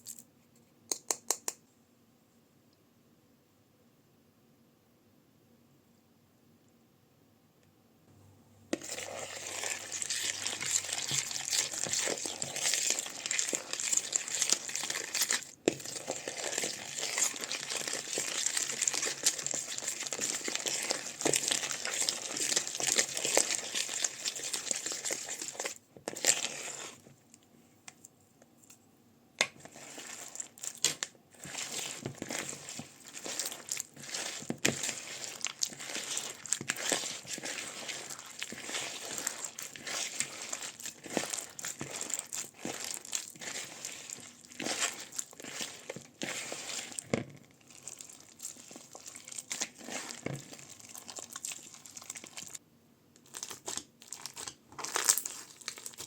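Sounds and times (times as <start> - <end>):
crunchy slime crackling: 8.8 - 27.0, 29.4 - 52.6, 53.2 - 56.0.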